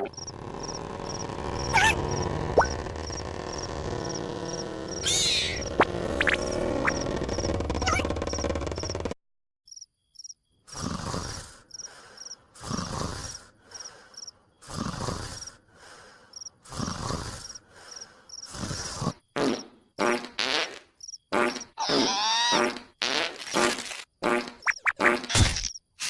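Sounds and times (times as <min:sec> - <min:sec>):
cartoon snoring: 0:00.0 - 0:09.2, 0:10.7 - 0:19.6
crickets chirping softly: 0:09.7 - 0:20.0, 0:20.8 - 0:21.6.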